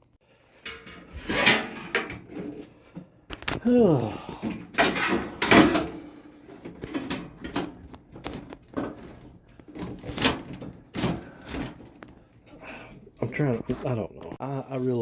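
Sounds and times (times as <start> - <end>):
metal panels knocking and scraping: 0.5 - 3.1, 4.4 - 12.6.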